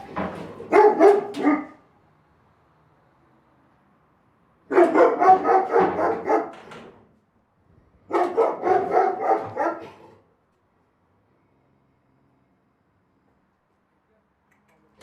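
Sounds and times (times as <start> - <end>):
big dog barking: 0.6 - 1.8, 4.7 - 6.7, 8.0 - 10.2.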